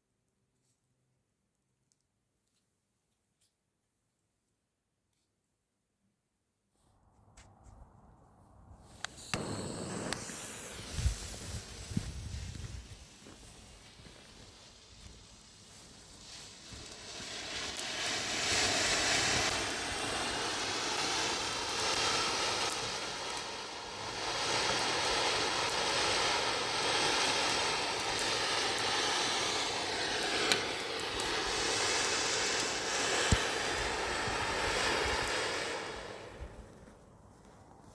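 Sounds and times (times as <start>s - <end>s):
firework fountain spraying hiss: 8.8s - 37.9s
small crackles: 8.8s - 37.9s
sharp firework pop: 9.0s - 14.4s, 24.4s - 36.7s.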